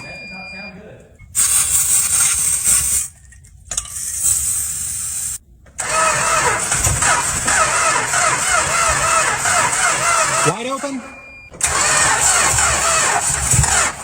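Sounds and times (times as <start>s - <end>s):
car engine cranking by starter: 5.6s - 14.0s.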